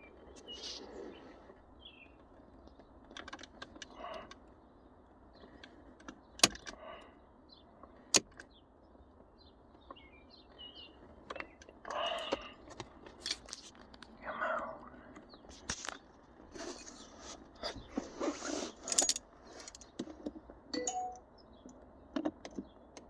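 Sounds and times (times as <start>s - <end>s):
clicking and rattling handling noise: 2.2s - 4.6s, 5.4s - 6.9s, 11.1s - 14.2s, 15.1s - 23.0s.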